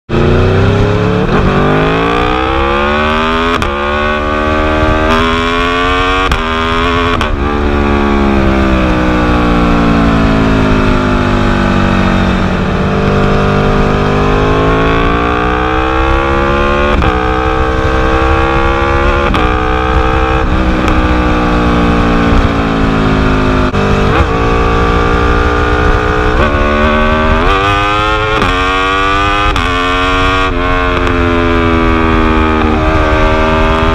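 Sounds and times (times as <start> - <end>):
motorcycle engine revving: 0.1 - 33.9.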